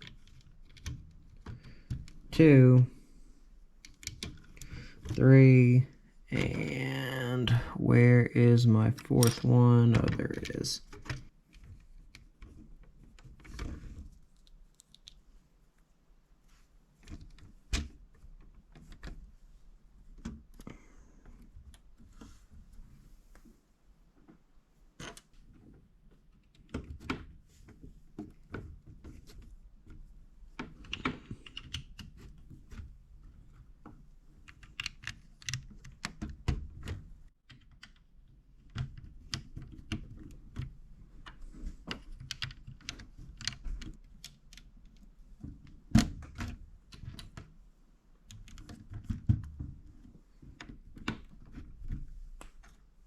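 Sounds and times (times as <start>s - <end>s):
plastic bricks clicking together: 9.2s - 10.2s.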